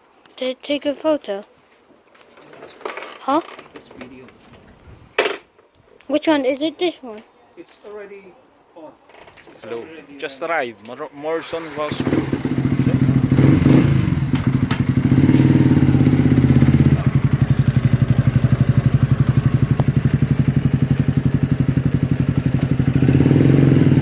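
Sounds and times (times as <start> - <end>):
motorcycle engine idling: 11.8 - 24.0.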